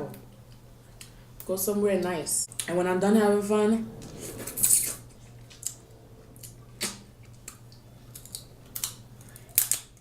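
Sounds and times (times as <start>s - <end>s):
low steady hum: 0.0s - 9.8s
crab shell cracking: 8.1s - 10.0s.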